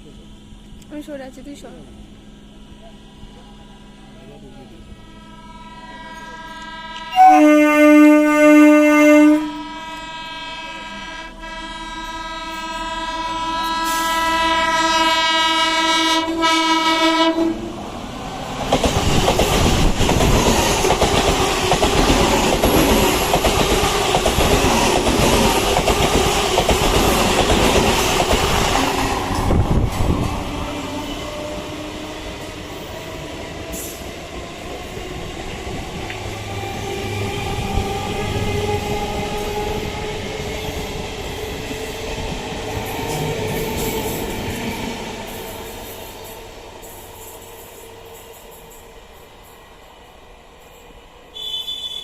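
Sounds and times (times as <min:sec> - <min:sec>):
train rumble and wheel clatter: 0:00.0 - 0:51.9
train horn blasts: 0:04.8 - 0:17.7, 0:51.3 - 0:52.0.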